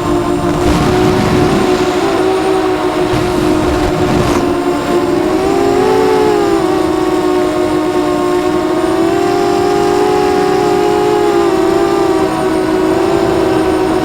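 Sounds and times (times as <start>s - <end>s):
quadcopter motors whining: 0.0s - 14.0s.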